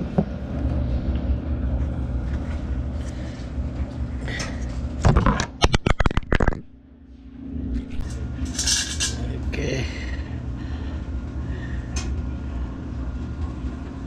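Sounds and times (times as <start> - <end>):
steady low rumble: 6.8 - 14.0.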